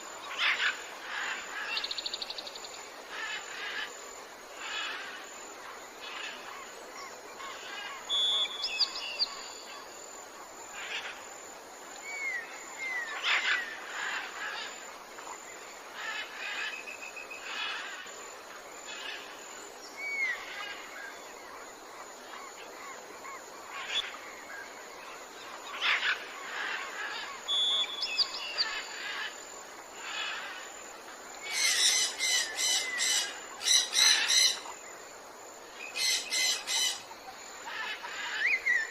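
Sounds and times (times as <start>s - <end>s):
steady background hiss: 0.0s - 38.9s
birds chirping and calling: 31.4s - 34.7s, 35.8s - 38.9s.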